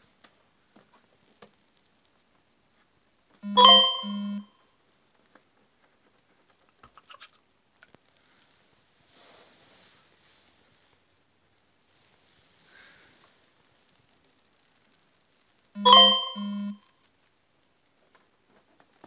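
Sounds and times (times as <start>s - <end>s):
faint clicks and rustles: 0.0s - 3.4s, 4.7s - 15.8s, 16.9s - 19.0s
low tone: 3.4s - 4.5s, 15.8s - 16.8s
short electronic chime: 3.4s - 4.5s, 15.8s - 16.8s
steady ringing tones: 3.4s - 4.5s, 15.8s - 16.8s.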